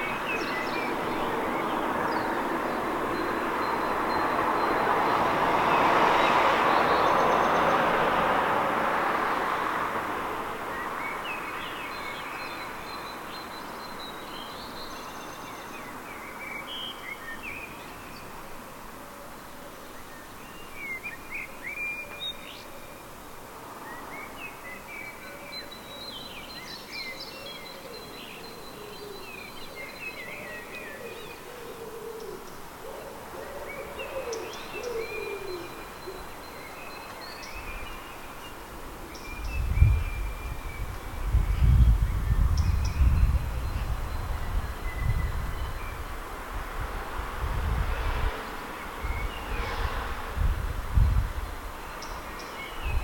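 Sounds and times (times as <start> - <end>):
songbirds twittering: 0.0 - 8.4, 10.5 - 46.3, 47.7 - 53.0
steady background hiss: 7.2 - 41.3.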